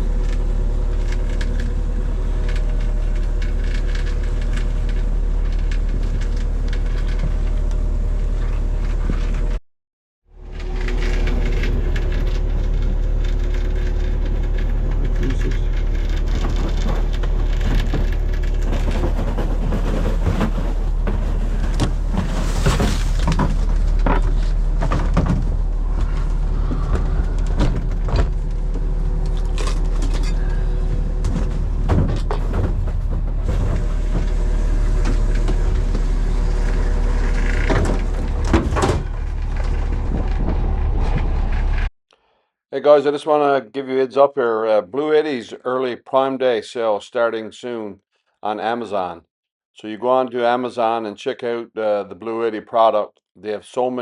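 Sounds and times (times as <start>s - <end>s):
boat engine running: 10.3s - 41.9s
knocks and clatters: 10.4s - 41.9s.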